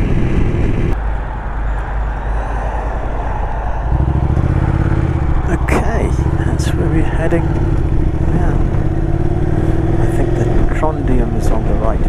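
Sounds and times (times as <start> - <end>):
wind and road noise: 0.0 - 12.0
motorcycle engine running: 3.9 - 12.0.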